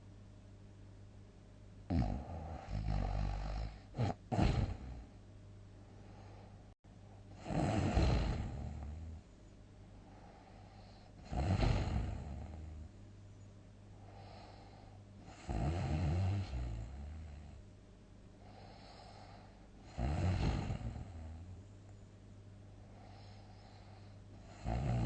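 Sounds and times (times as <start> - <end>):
person snoring heavily: 1.9 - 5.2, 7.3 - 9.2, 10.4 - 12.9, 14.1 - 17.6, 18.5 - 21.5, 22.9 - 25.0
soft breathing: 5.8 - 7.4, 8.0 - 15.5, 18.3 - 24.6.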